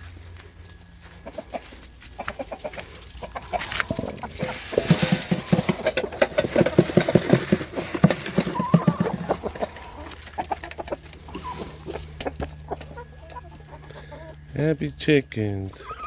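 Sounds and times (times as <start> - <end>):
chickens clucking: 0.0 - 16.0.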